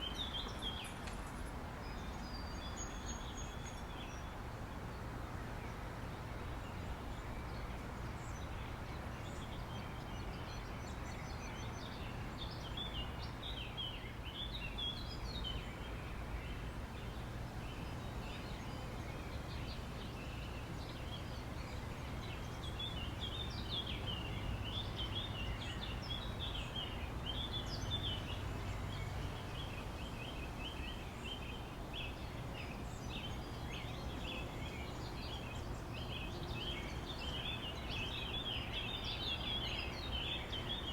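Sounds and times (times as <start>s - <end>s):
birds chirping: 0.0s - 4.4s, 6.8s - 40.9s.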